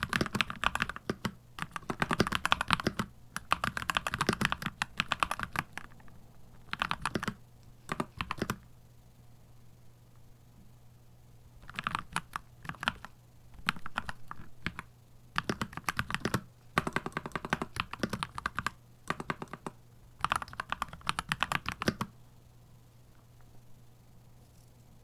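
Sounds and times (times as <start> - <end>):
mechanical keyboard typing: 0.0 - 8.6, 11.6 - 22.1.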